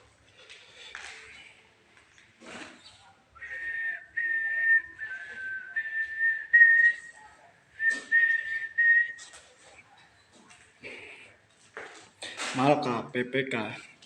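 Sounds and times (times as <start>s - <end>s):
person whistling a slow tune: 3.4s - 7.0s, 7.8s - 9.2s.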